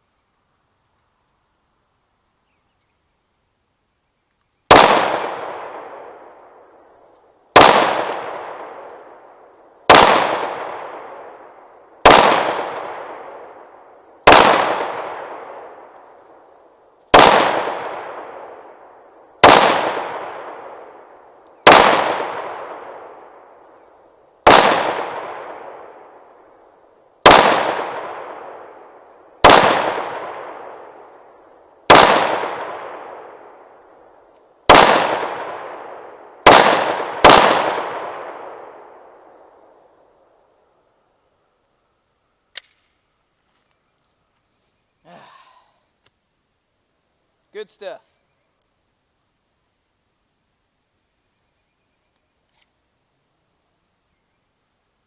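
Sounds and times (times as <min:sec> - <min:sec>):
pistol shots echoing: 0:04.7 - 0:06.5, 0:07.5 - 0:09.2, 0:09.9 - 0:16.1, 0:17.1 - 0:23.7, 0:24.4 - 0:26.4, 0:27.2 - 0:31.1, 0:31.8 - 0:33.7, 0:34.7 - 0:39.5.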